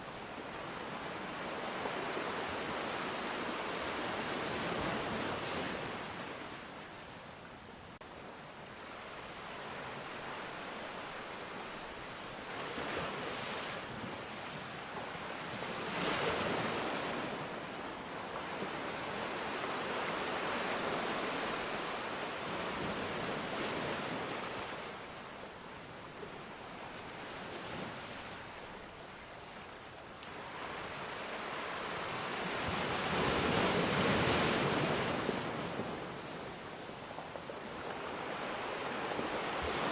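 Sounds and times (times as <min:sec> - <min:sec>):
sea waves washing in: 0:30.4 - 0:39.9.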